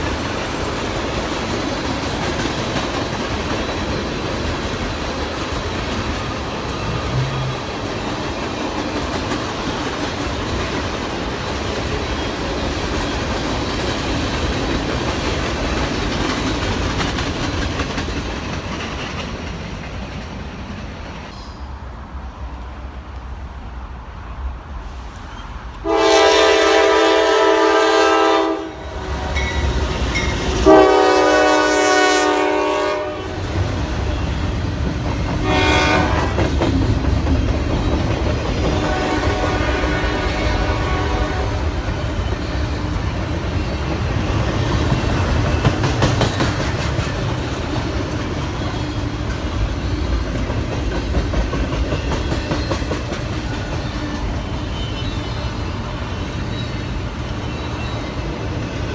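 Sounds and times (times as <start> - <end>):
train rumble and wheel clatter: 0.0 - 58.9
locomotive air horn blasts: 6.8 - 7.8, 25.8 - 29.5, 30.6 - 33.4, 35.4 - 36.4, 38.7 - 41.6.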